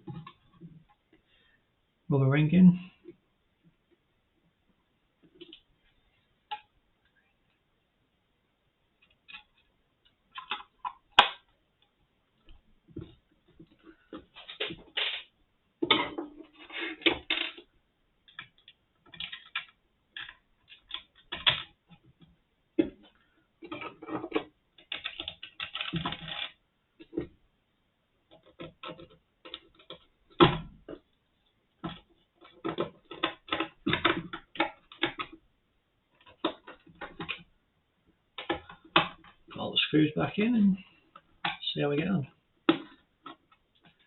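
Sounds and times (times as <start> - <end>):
small parts clicking and rattling: 18.3 - 22.1, 23.1 - 27.2.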